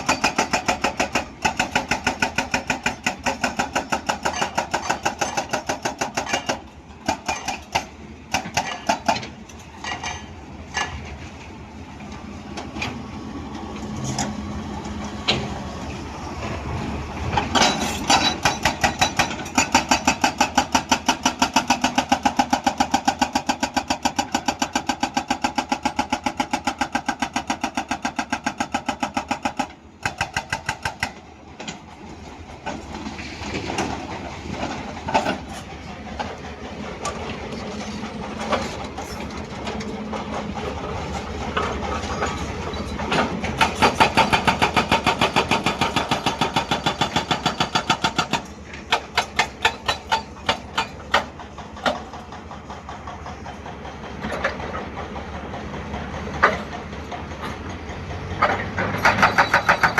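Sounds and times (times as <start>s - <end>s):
hydraulic breaker hammering rock: 0.0s - 9.4s, 17.4s - 31.2s, 40.3s - 53.6s, 56.2s - 59.9s
diesel engine running under load: 6.0s - 59.9s.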